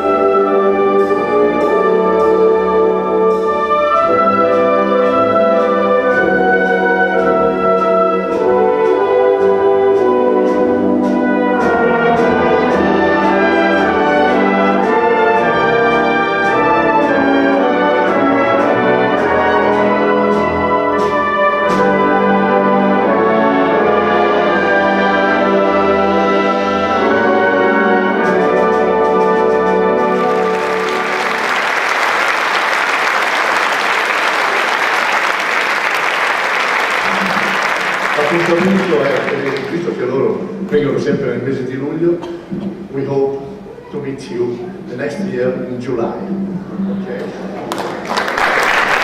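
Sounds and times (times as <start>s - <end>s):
percussion strokes: 0.0s - 22.3s, 28.2s - 41.4s
brass concert band playing: 0.0s - 45.0s, 45.6s - 49.0s.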